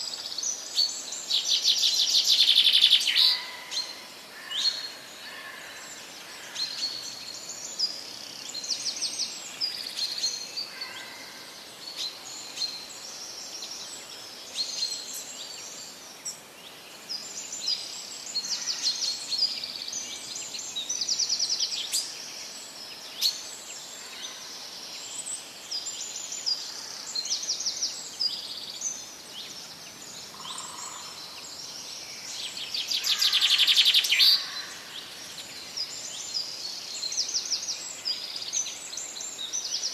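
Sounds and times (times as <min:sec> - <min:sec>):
songbirds chirping and singing: 0:00.0 - 0:39.9.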